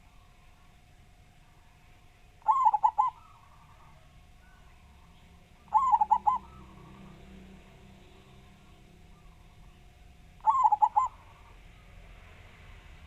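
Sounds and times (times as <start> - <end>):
dove cooing: 2.4 - 7.3, 10.4 - 11.6.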